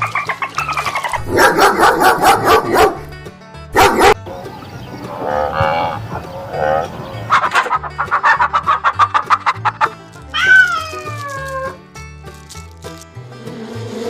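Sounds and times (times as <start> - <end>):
background music: 0.0 - 14.0
dog barking: 1.2 - 3.1, 3.7 - 4.2, 7.3 - 9.3
dog drawn-out calls: 5.2 - 11.8.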